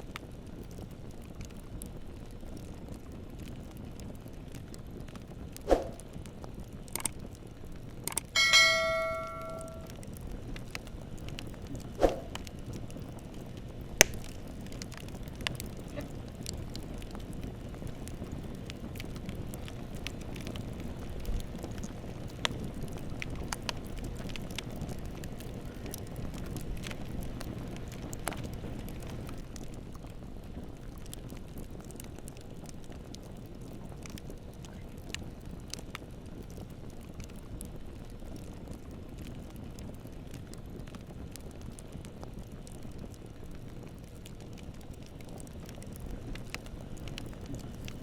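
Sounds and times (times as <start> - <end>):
bonfire crackling and popping: 0.0 - 48.0
bell-like metallic ring: 8.4 - 9.9.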